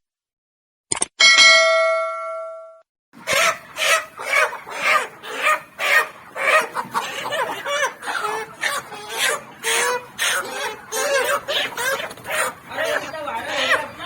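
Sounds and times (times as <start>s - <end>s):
bell chime: 1.2s - 2.8s
chickens clucking: 3.2s - 14.0s.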